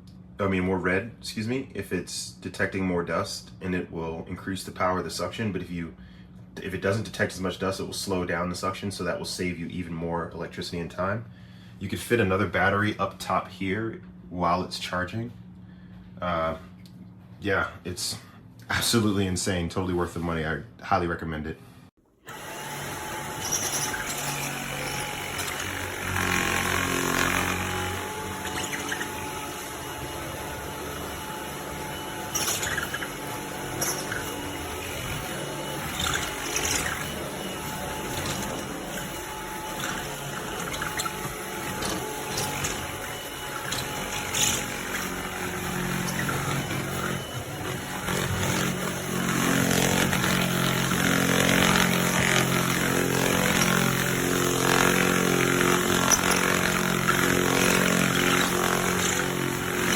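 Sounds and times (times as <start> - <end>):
stick vacuum motor running: 22.1 - 59.9.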